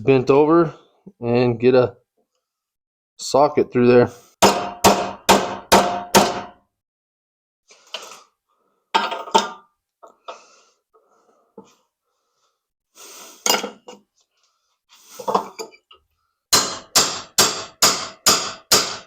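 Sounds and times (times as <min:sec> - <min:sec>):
hammer striking metal: 0:04.4 - 0:06.6, 0:16.5 - 0:19.0.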